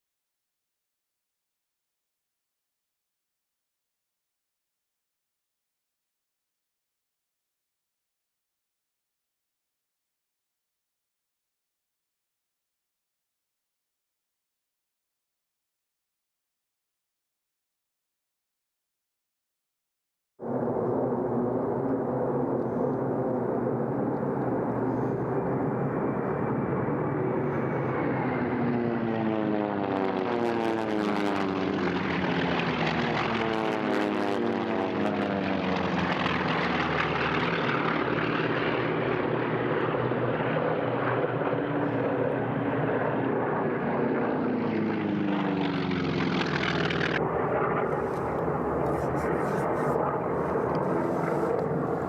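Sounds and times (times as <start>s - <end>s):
propeller aircraft flying past: 20.4s - 52.0s.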